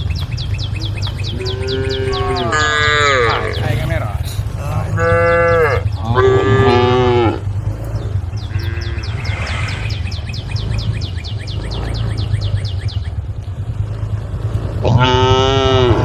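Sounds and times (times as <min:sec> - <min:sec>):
low hum: 0:00.0 - 0:16.0
cow mooing: 0:01.2 - 0:10.0, 0:14.8 - 0:16.0.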